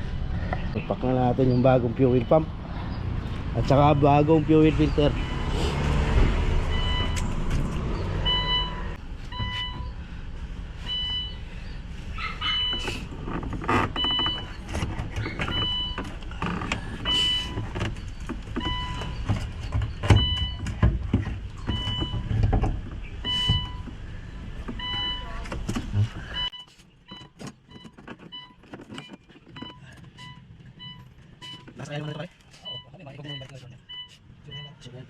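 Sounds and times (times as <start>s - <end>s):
electronic warning beep: 6.7s - 7.2s, 8.2s - 10.0s, 10.9s - 11.4s, 17.0s - 17.6s, 18.6s - 19.3s, 23.3s - 23.8s, 24.8s - 25.4s, 26.3s - 34.9s.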